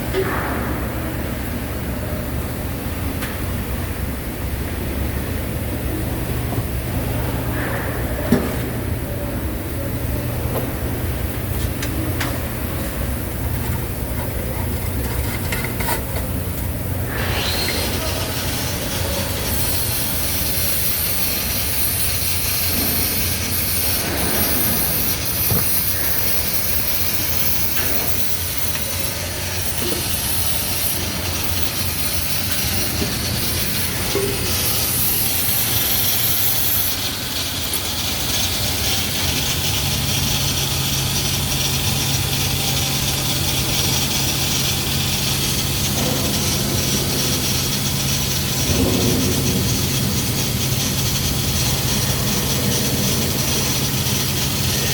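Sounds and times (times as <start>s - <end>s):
low machinery drone: 0.0s - 54.9s
welding arc hissing: 11.2s - 54.9s.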